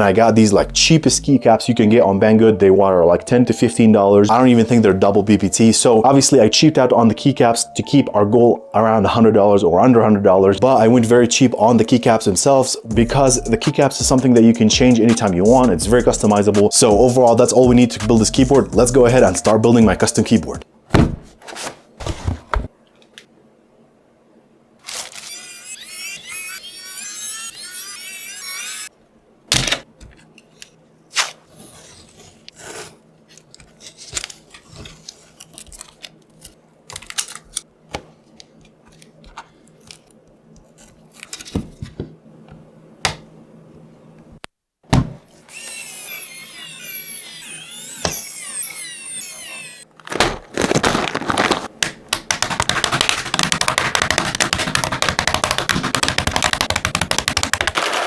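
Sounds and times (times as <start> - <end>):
rapid keyboard clicking: 50.6 - 58.0.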